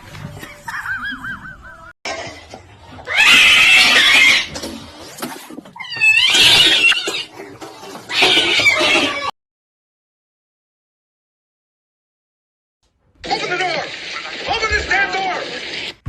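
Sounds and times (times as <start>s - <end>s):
cat yowling: 3.1s - 4.5s, 8.1s - 9.3s.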